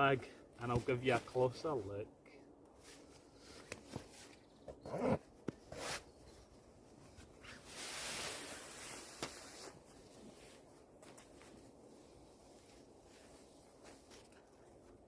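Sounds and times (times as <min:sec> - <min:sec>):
nylon sleeping bag rustling: 0:07.2 - 0:14.6.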